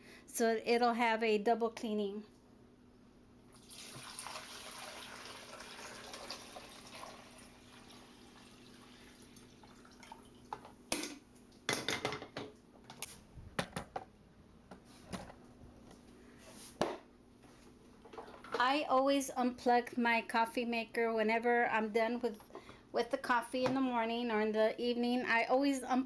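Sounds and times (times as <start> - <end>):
liquid splashing into reservoir: 3.5 - 10.5.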